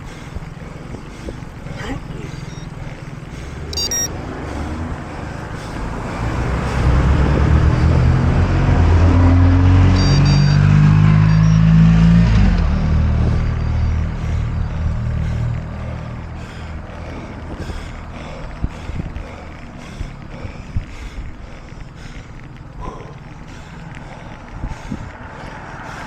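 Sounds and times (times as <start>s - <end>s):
vehicle engine passing by: 2.1s - 19.8s.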